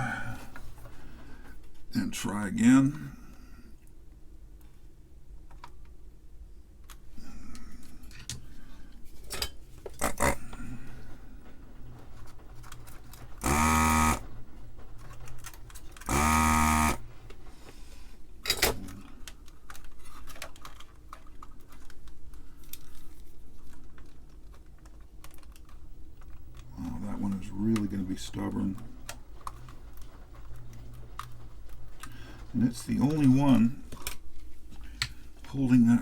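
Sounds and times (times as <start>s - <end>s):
desoldering pump buzzing: 10.0s - 10.6s, 13.4s - 14.3s, 15.9s - 17.2s.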